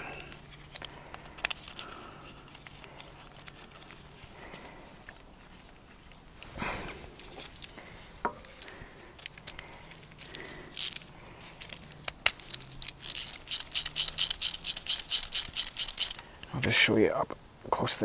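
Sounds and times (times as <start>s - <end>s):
rapid bright clicks: 0.0s - 6.5s, 7.4s - 16.5s
metal tools clicking and tapping: 7.4s - 16.3s.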